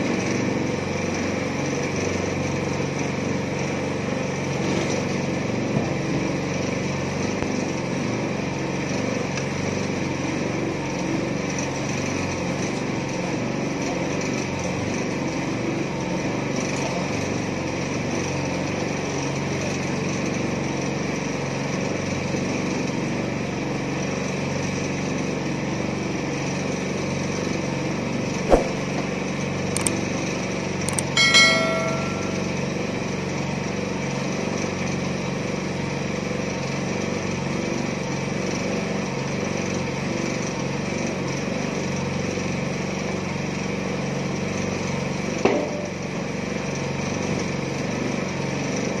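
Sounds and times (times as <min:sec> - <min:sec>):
small petrol engine running: 0:00.0 - 0:28.2, 0:29.2 - 0:49.0
sharp knock: 0:28.5 - 0:29.0
ringing metal clang: 0:31.0 - 0:32.8.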